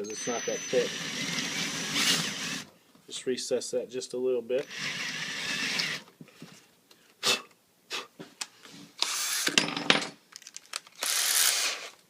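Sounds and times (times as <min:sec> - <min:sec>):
drill clicks: 0:00.0 - 0:02.7, 0:04.6 - 0:06.1
drill boring into particle board: 0:00.1 - 0:02.7, 0:04.6 - 0:06.1, 0:11.0 - 0:11.9.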